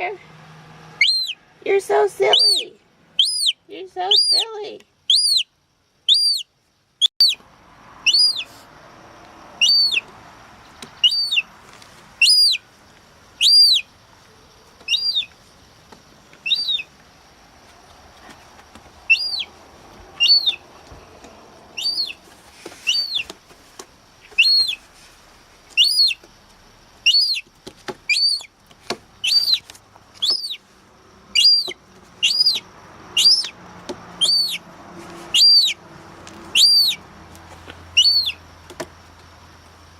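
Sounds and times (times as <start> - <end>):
gull chick peeping: 1.0 - 1.4, 2.2 - 6.5, 7.1 - 7.4, 8.0 - 8.5, 9.6 - 10.1, 10.8 - 11.5, 12.2 - 12.6, 13.4 - 13.9, 14.8 - 15.4, 16.4 - 16.9, 19.1 - 19.5, 20.2 - 20.6, 21.7 - 22.2, 22.8 - 23.4, 24.2 - 24.8, 25.7 - 26.4, 27.0 - 28.6, 29.2 - 30.6, 31.3 - 34.7, 35.3 - 35.8, 36.5 - 37.0, 38.0 - 38.4.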